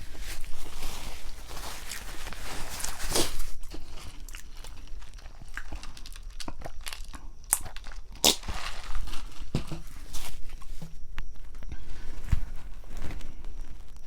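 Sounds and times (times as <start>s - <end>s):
chewing crunchy toasted bread: 0.5s - 10.7s.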